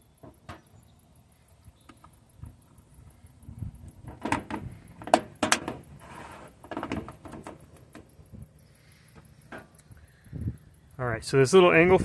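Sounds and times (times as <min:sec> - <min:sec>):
hard parts clicking and knocking: 0:03.9 - 0:08.2.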